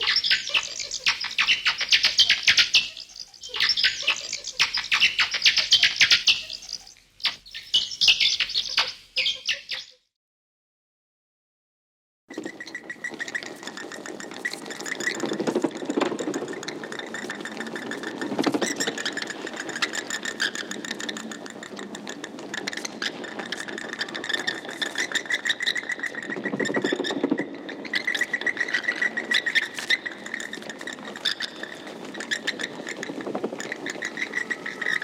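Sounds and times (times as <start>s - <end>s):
bats squeaking and chittering: 0.0s - 10.0s, 12.3s - 35.0s
low fluttering rustle: 12.3s - 35.0s.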